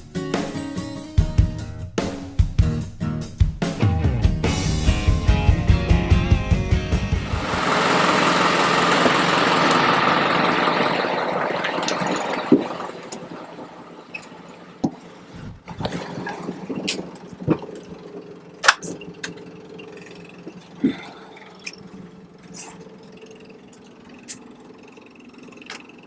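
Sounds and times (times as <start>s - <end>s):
truck engine idling: 6.8s - 15.4s, 16.6s - 26.0s
loud rushing noise: 7.2s - 14.1s.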